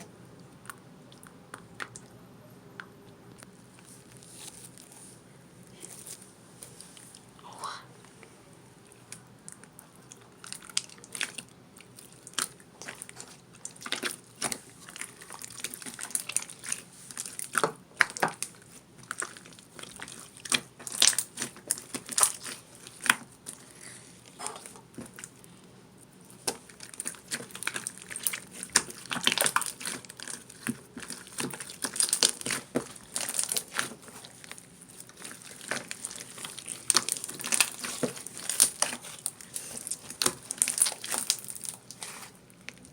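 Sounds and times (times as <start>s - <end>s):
crinkling from handling: 26.3s - 42.9s.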